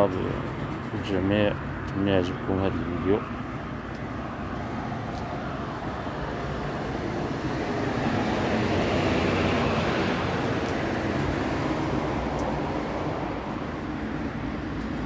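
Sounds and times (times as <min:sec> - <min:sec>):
vehicle engine rumble: 0:00.0 - 0:15.0.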